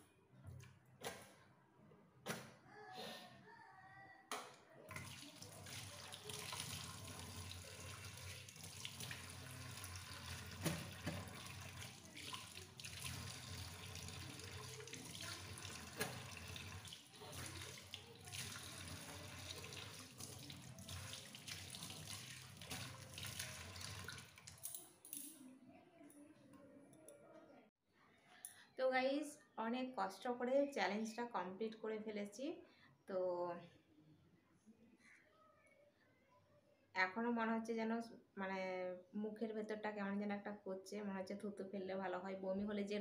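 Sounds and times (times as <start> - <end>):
water running from a tap: 4.9 - 24.8.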